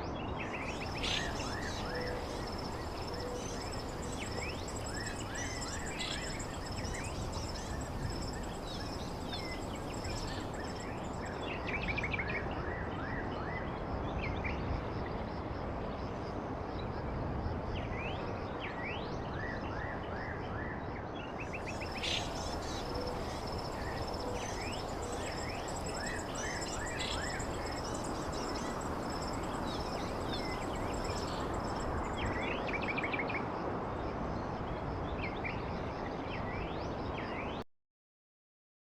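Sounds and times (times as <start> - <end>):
bird chirps: 0.6 - 11.1, 21.6 - 32.5
high insect drone: 0.6 - 11.4, 21.6 - 32.8
steady rushing noise: 21.7 - 32.4.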